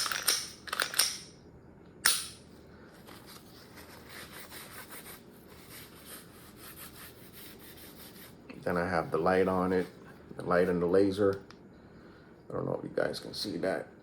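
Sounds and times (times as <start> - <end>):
pistol metallic clicks: 0.0 - 1.4, 2.0 - 2.4.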